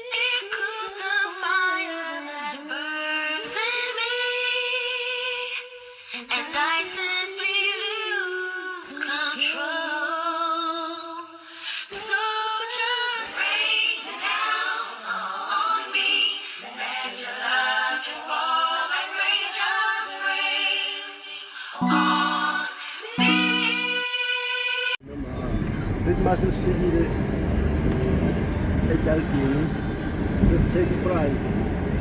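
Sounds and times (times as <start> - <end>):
background music with singing: 0.0 - 25.0.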